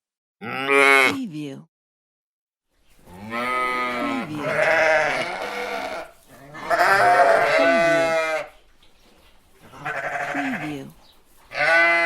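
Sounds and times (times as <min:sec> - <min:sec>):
sheep bleating: 0:03.1 - 0:08.6, 0:09.7 - 0:12.0.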